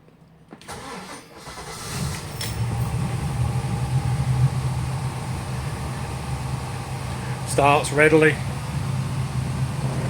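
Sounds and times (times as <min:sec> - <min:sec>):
boat engine humming: 0:02.2 - 0:10.0.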